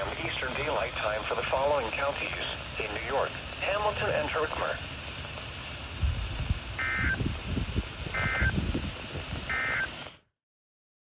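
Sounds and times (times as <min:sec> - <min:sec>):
radio hiss: 0:00.0 - 0:10.2
warbling data tone bursts: 0:06.8 - 0:07.3, 0:08.1 - 0:08.6, 0:09.5 - 0:10.0.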